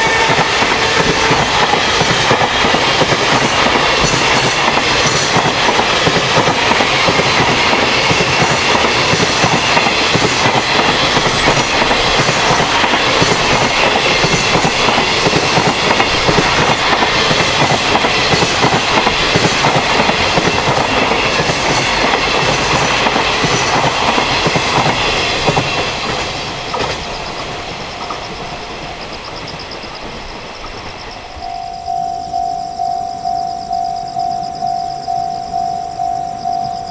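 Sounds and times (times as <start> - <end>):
train wheels clattering over rails: 0.0 - 31.4
pulsing level-crossing alarm: 31.0 - 36.9.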